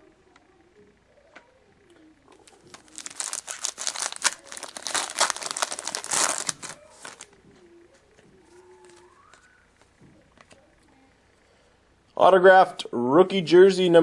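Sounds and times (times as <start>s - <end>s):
card pack wrapper tearing and crinkling: 2.4s - 7.3s.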